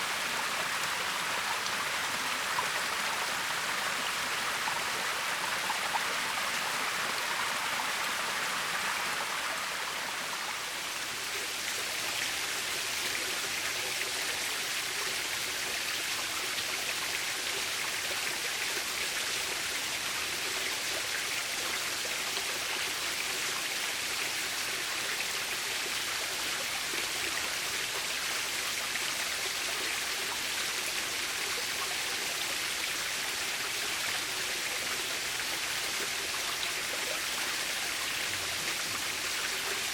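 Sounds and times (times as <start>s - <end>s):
waterfall pouring and splashing: 0.0s - 39.9s.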